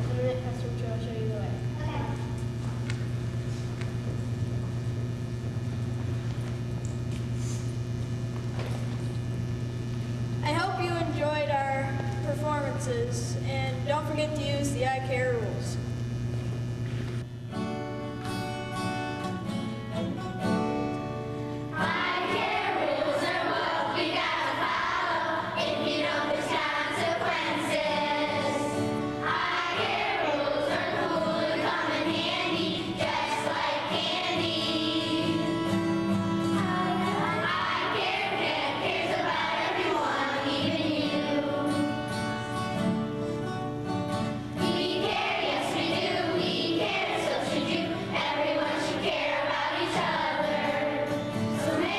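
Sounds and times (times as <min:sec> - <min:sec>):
children singing: 0:21.8 - 0:35.8, 0:36.5 - 0:42.2, 0:44.6 - 0:51.9.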